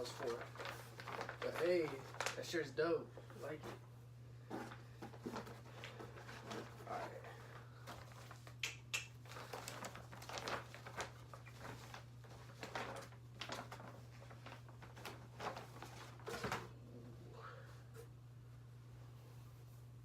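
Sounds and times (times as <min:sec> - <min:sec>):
packaging and shirt rustling: 0:00.0 - 0:03.9, 0:04.5 - 0:08.6, 0:09.2 - 0:16.7
low electrical hum: 0:00.0 - 0:20.0.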